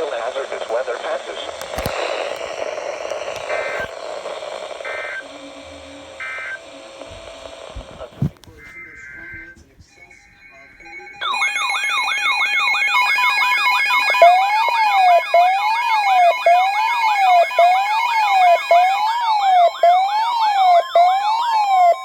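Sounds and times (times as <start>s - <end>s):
slow wailing siren: 10.4s - 22.0s
fast yelping electronic siren: 11.0s - 22.0s.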